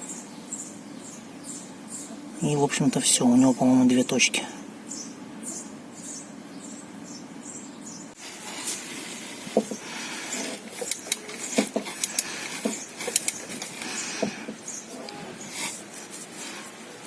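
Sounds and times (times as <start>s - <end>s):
wrench clicking on metal: 10.8s - 12.3s, 13.0s - 13.4s.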